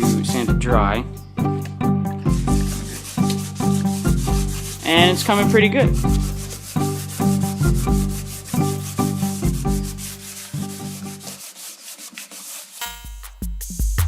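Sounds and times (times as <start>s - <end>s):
wet sanding with sandpaper: 0.0s - 0.5s, 2.4s - 13.0s
background music with bass line: 0.0s - 11.2s, 12.9s - 14.0s.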